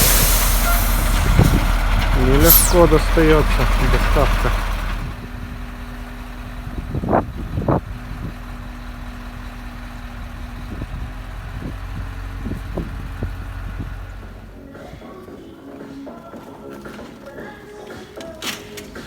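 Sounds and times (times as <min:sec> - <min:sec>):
truck engine running: 0:00.0 - 0:14.7.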